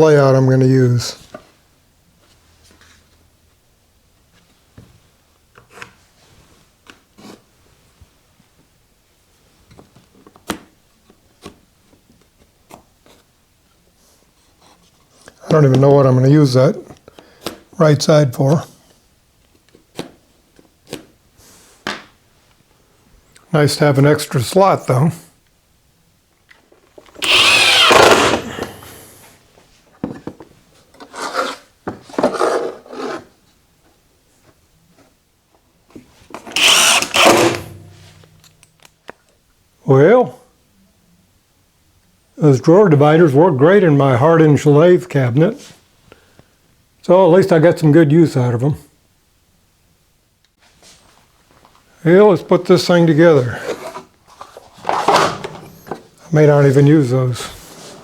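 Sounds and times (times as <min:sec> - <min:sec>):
tools scraping in drawer: 0:53.6 - 0:56.1.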